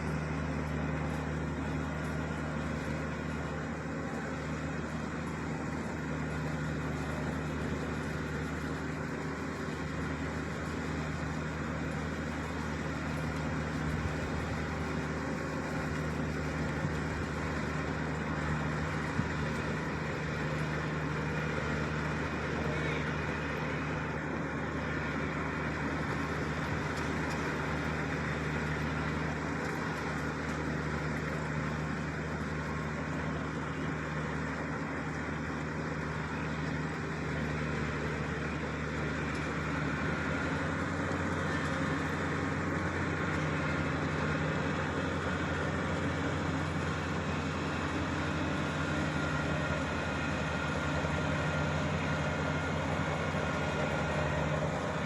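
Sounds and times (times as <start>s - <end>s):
diesel engine droning: 0.0s - 55.0s.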